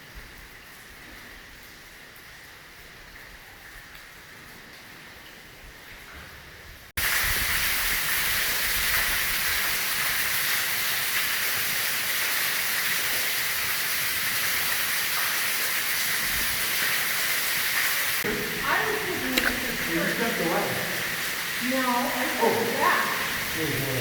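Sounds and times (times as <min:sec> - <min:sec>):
water pouring hiss: 0:07.0 - 0:24.0.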